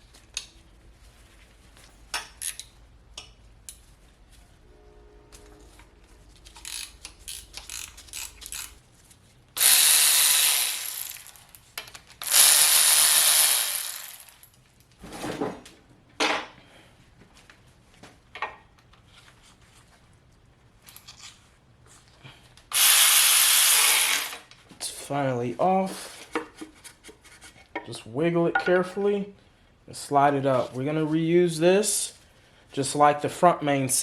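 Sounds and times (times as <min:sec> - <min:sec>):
ratchet clicks: 0:06.4 - 0:08.8, 0:09.6 - 0:14.5, 0:22.7 - 0:24.4
power tool running: 0:09.6 - 0:11.6, 0:12.2 - 0:14.4, 0:22.7 - 0:24.4.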